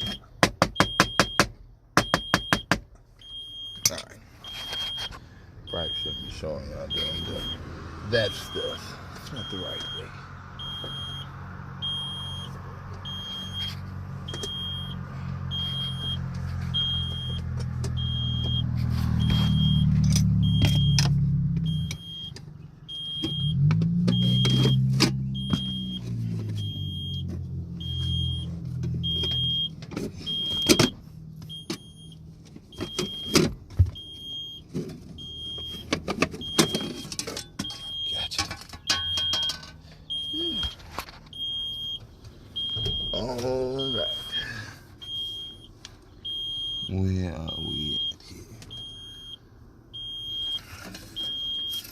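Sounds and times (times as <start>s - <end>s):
high warning beep: 0.8s - 7.6s, 8.2s - 26.0s, 26.6s - 29.7s, 37.6s - 40.8s, 42.6s - 49.4s
diesel engine idling and revving: 3.0s - 51.9s.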